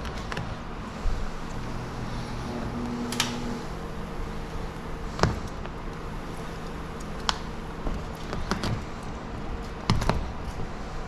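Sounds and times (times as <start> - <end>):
steady low hum: 0.0 - 11.0
short sharp clicks and knocks: 3.1 - 3.6.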